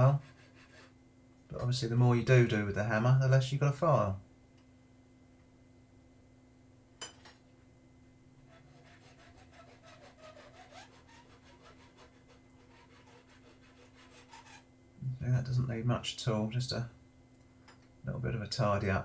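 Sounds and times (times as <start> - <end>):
hand file strokes on steel: 0.0 - 1.0, 8.4 - 14.7.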